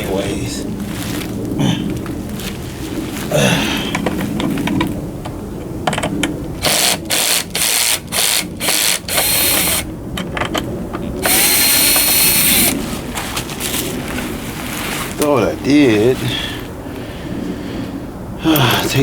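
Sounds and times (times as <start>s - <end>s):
cordless drill running: 6.6s - 9.9s, 11.2s - 12.8s.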